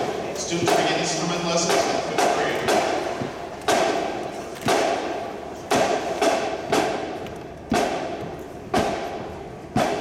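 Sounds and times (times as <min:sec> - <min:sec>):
marching band drums beating: 0:00.0 - 0:10.0.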